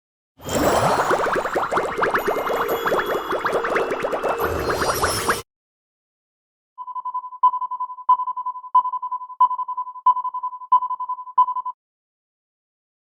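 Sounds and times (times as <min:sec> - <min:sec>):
high electronic tone trilling: 0:00.8 - 0:05.4.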